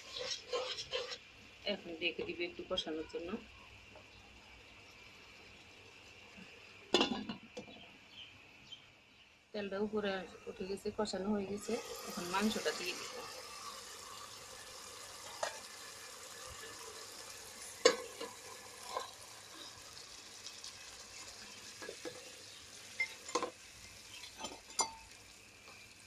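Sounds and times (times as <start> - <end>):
chicken sizzling in oil: 0.0 - 1.6, 11.5 - 26.0.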